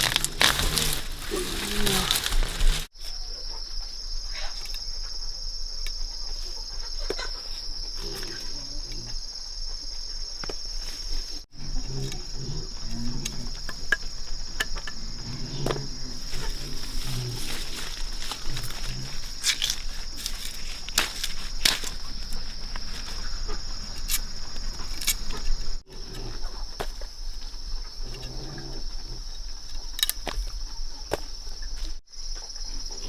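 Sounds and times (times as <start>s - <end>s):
crinkling noise: 0.0s - 2.9s, 16.2s - 25.8s
insects calling: 0.0s - 33.0s.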